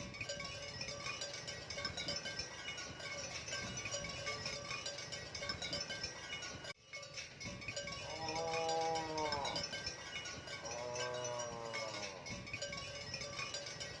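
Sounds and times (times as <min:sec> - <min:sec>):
bells tinkling: 0:00.0 - 0:14.0
cattle mooing: 0:08.0 - 0:09.7, 0:10.6 - 0:12.2.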